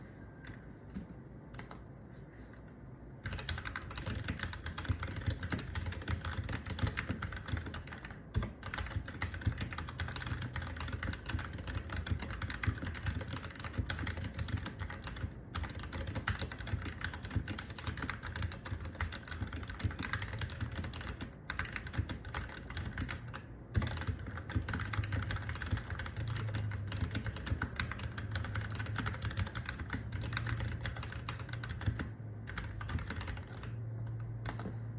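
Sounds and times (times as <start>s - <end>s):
mechanical keyboard typing: 1.0s - 1.8s, 3.2s - 34.8s.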